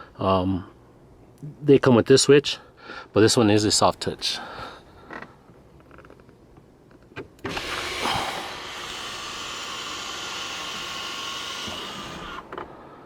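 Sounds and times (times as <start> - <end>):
sunroof electric motor running: 7.4 - 12.8.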